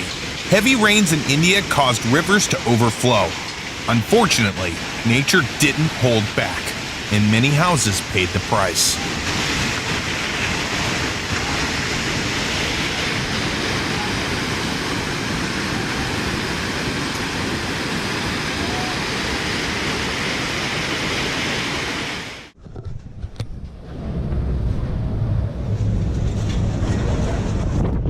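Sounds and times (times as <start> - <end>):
flooded river rushing: 0.0 - 22.5
wind buffeting microphone: 22.9 - 28.0.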